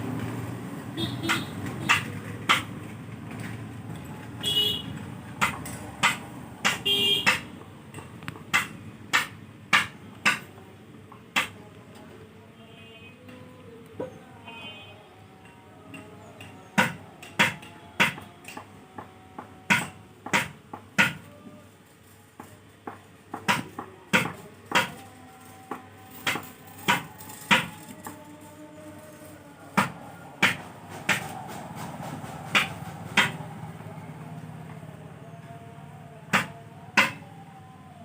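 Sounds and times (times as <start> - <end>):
sharp clicks and knocks: 1.3 - 4.0, 5.0 - 11.6.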